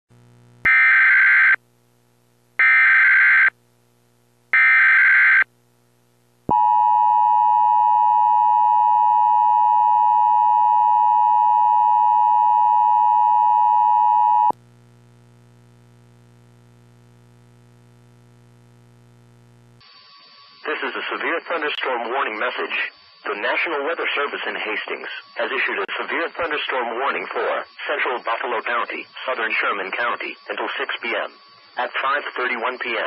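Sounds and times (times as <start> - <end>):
faint low hum: 5.5 - 19.8
screeching digital data bursts: 19.8 - 33.0.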